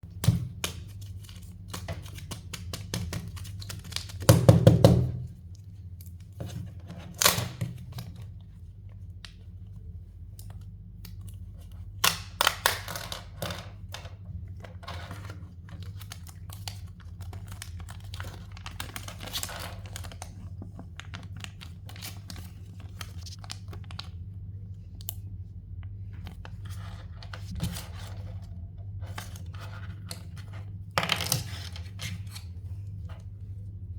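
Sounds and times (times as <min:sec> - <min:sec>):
low steady hum: 0:00.0 - 0:33.9
plastic wrappers tearing and crinkling: 0:15.1 - 0:20.3.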